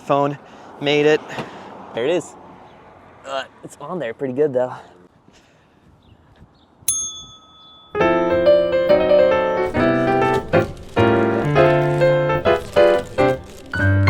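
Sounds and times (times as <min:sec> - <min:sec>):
bell-like ding: 0:06.9 - 0:08.2
piano chords: 0:07.7 - 0:14.0.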